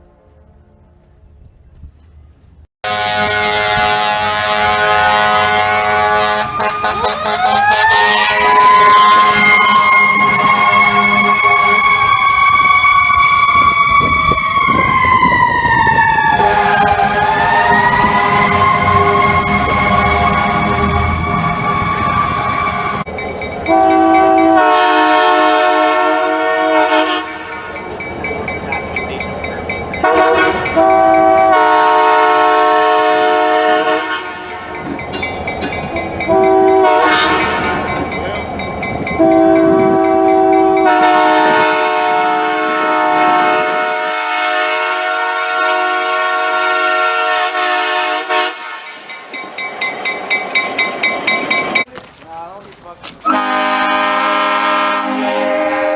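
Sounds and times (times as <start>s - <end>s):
train running noise: 0.0s - 55.9s
locomotive air horn blasts: 2.8s - 14.8s, 16.2s - 23.0s, 23.7s - 27.8s, 30.0s - 34.8s, 36.3s - 38.0s, 39.2s - 49.1s, 53.1s - 55.9s.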